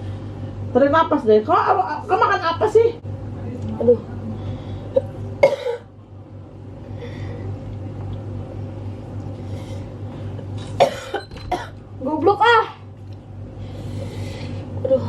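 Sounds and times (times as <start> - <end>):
person coughing: 5.0 - 5.9, 10.8 - 11.8.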